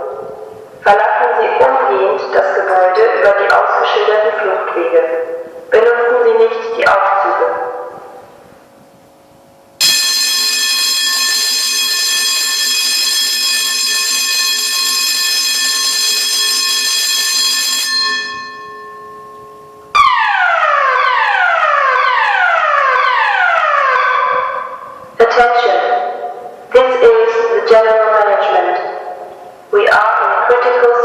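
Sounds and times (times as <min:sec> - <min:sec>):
falling alarm tone: 0:09.8 - 0:25.0
loud steady alarm tone: 0:09.8 - 0:26.7.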